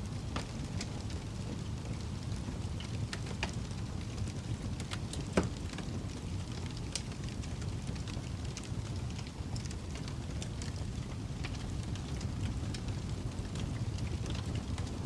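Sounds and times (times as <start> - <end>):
wood fire crackling: 0.0 - 15.0.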